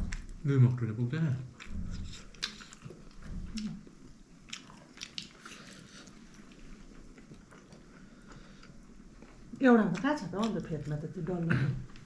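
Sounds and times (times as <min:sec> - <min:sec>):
mouth clicks and smacks chewing: 0:01.6 - 0:10.7.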